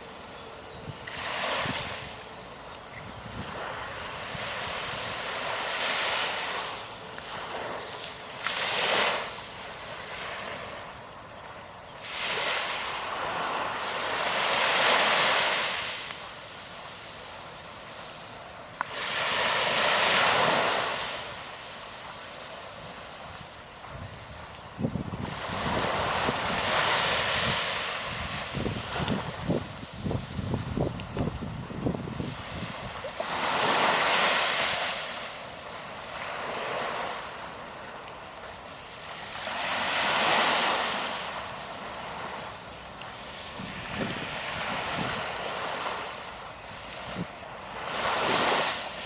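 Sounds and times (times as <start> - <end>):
sea waves breaking: 1.0 - 49.0
wind buffeting microphone: 23.4 - 33.4, 43.4 - 46.1.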